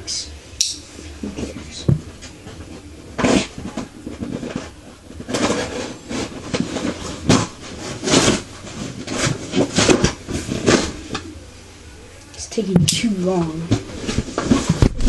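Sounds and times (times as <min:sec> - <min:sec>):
cardboard box scraping and rustling: 0:01.3 - 0:11.3, 0:13.7 - 0:15.0.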